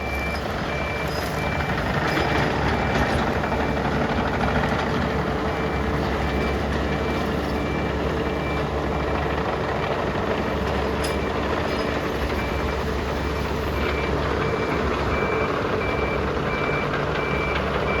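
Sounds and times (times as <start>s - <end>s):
backup alarm beeping: 0.0s - 1.8s
diesel engine running: 0.0s - 18.0s.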